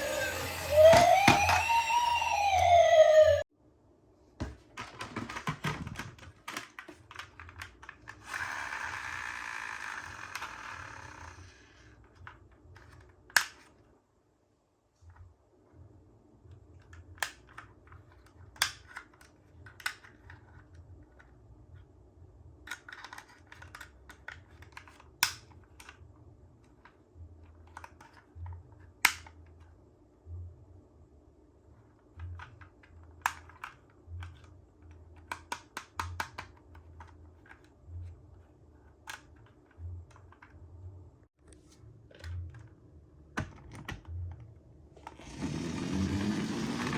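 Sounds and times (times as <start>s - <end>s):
toy car rolling down plastic slide: 0.0s - 3.3s, 8.2s - 11.7s, 45.0s - 46.9s
plastic toy cars clicking: 4.8s - 13.8s, 16.8s - 21.4s, 22.6s - 26.0s, 32.2s - 37.8s.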